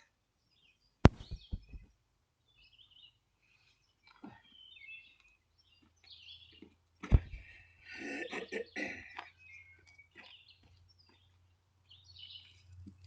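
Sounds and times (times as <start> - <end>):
birds chirping: 0.5 - 13.0
sharp knocks: 1.1 - 1.9.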